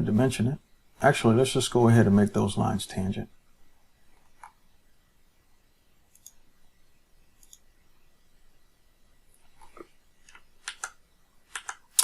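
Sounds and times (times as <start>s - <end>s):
computer mouse clicks: 6.1s - 6.4s, 7.4s - 7.7s, 9.6s - 12.0s.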